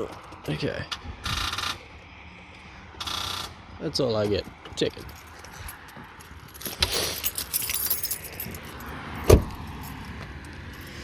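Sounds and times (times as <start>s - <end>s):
metallic jingling and rattling: 5.0s - 9.0s.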